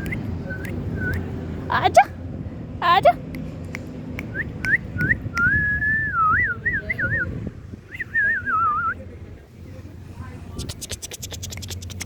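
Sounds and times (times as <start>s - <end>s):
person whistling: 4.3s - 7.2s.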